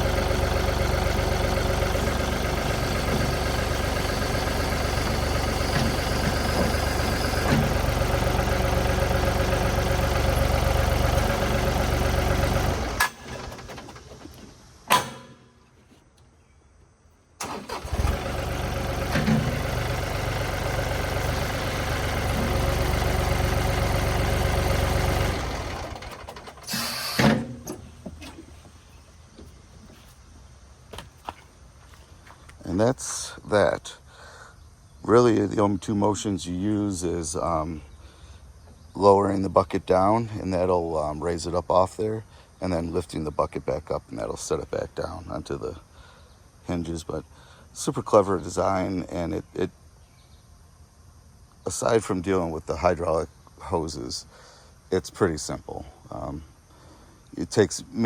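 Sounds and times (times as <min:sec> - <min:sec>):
tractor diesel engine running: 0:00.0 - 0:15.9, 0:17.4 - 0:30.1.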